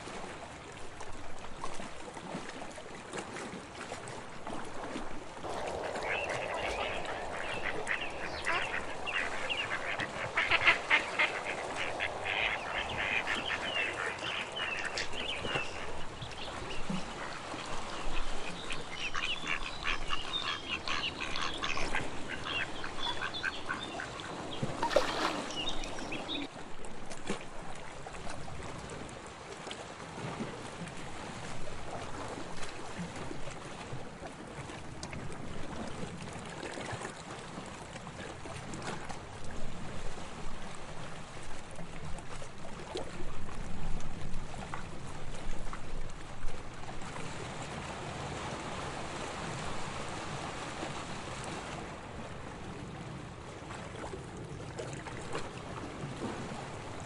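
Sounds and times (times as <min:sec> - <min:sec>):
sea water washing: 0:00.2 - 0:28.4
ducks quacking: 0:05.5 - 0:26.5.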